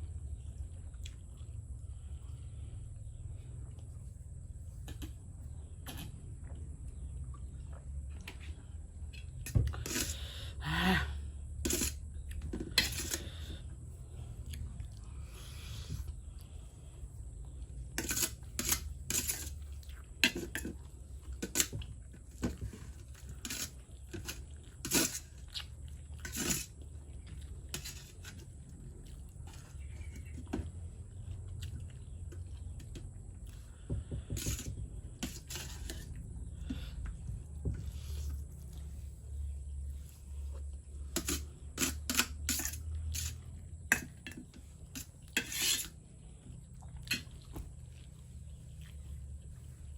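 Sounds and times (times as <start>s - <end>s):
low steady hum: 0.0s - 49.9s
chewing noodles: 19.5s - 33.8s, 44.5s - 49.9s
cutlery clinking against a plate: 41.1s - 46.0s.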